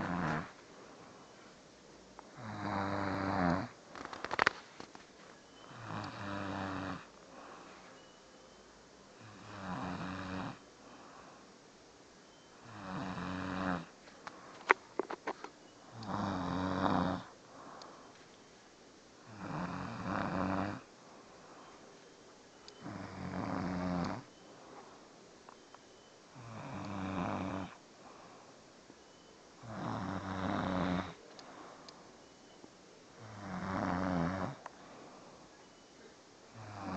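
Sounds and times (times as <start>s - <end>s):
man snoring: 0.0s - 0.6s, 2.3s - 3.8s, 5.7s - 7.7s, 9.2s - 11.4s, 12.6s - 14.0s, 15.9s - 18.0s, 19.2s - 21.6s, 22.8s - 24.3s, 26.3s - 28.4s, 29.6s - 31.8s, 33.2s - 35.2s, 36.5s - 36.9s.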